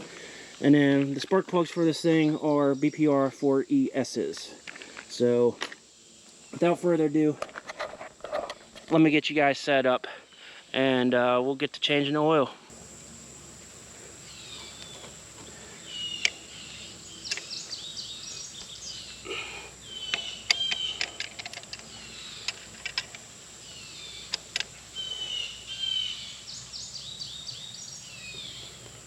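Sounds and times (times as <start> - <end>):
birds chirping: 12.7 - 29.0
sharp clicks and knocks: 20.0 - 23.3, 24.2 - 24.8.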